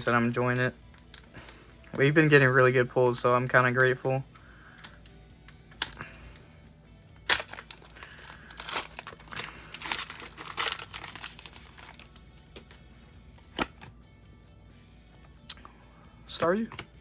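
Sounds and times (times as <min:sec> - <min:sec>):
foil wrapper ripping: 0:07.2 - 0:12.3
foil crinkling: 0:07.2 - 0:12.7.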